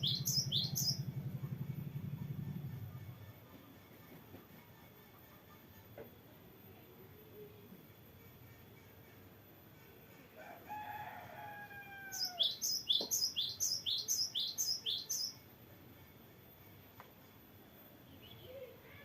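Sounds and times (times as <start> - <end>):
bird singing high sweeping notes: 0.0 - 1.6, 12.1 - 15.4
rooster crowing: 10.4 - 12.8.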